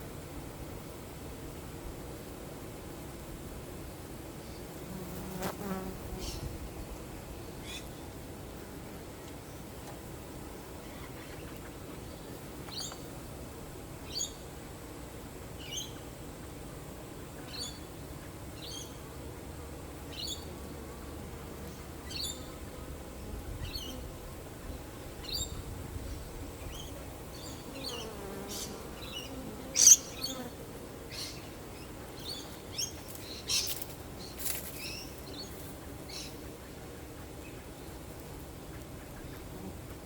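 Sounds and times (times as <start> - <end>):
honeybees buzzing: 4.1 - 7.4, 18.3 - 25.2, 26.1 - 40.0
bird chirping: 26.7 - 30.4.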